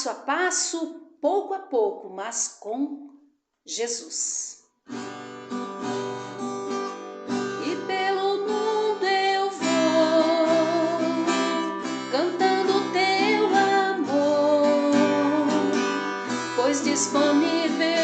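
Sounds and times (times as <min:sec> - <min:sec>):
strummed acoustic guitar: 0:04.9 - 0:18.0.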